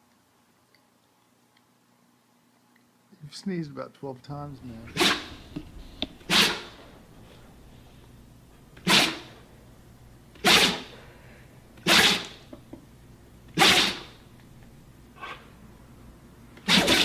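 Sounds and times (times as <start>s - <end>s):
dog sneezing: 4.9s - 5.5s, 6.2s - 6.9s, 8.8s - 9.4s, 10.4s - 11.0s, 11.8s - 12.4s, 13.6s - 14.2s, 16.6s - 17.0s.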